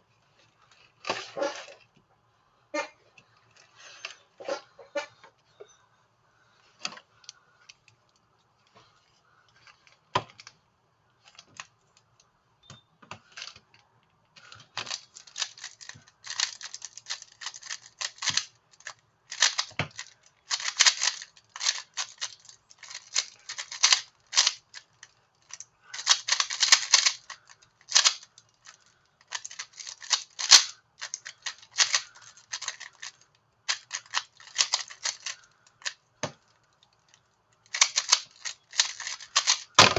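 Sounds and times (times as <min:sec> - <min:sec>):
plastic clicks and clacks: 0:25.4 - 0:36.5, 0:37.7 - 0:39.9.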